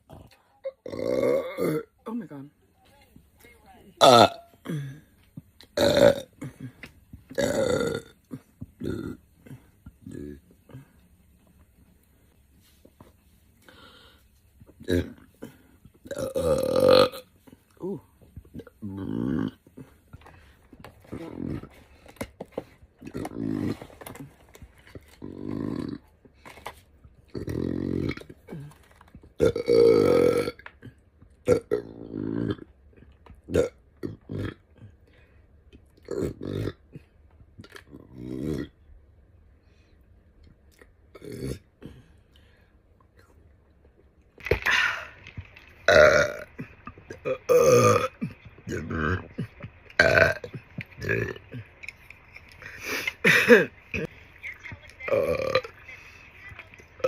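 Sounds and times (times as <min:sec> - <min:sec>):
woman burping: 0:00.1 - 0:02.0, 0:04.0 - 0:05.1, 0:05.8 - 0:10.8, 0:14.8 - 0:19.9, 0:29.4 - 0:32.7, 0:33.5 - 0:34.9, 0:41.1 - 0:42.0, 0:45.9 - 0:51.8, 0:52.6 - 0:54.1, 0:55.1 - 0:55.7.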